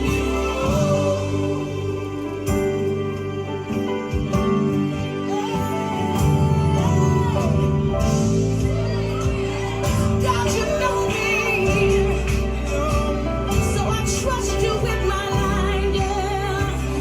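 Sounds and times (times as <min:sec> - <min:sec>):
person singing: 0:00.0 - 0:03.7, 0:04.9 - 0:17.0
band playing gospel music: 0:00.0 - 0:17.0.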